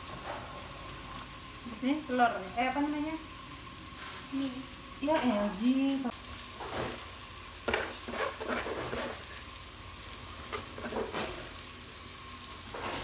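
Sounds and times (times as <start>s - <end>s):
noodles and egg sizzling in a pan: 0.0s - 13.0s
spatula scraping a pan: 6.5s - 9.5s, 10.4s - 11.6s, 12.7s - 13.0s.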